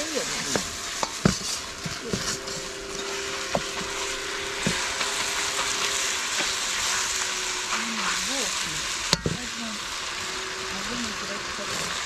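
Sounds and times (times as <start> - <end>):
food sizzling in a wok: 0.0 - 12.0
utensil knocking against wok: 0.3 - 6.6, 9.1 - 9.6.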